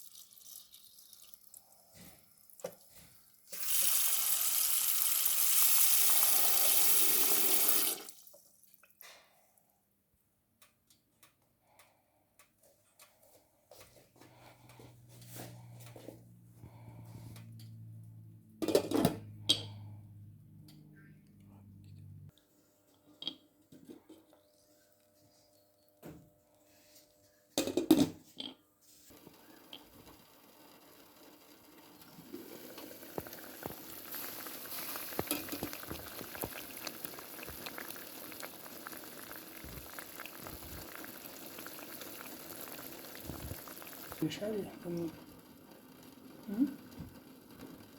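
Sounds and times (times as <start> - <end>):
liquid boiling with small pops: 29.1 - 47.9.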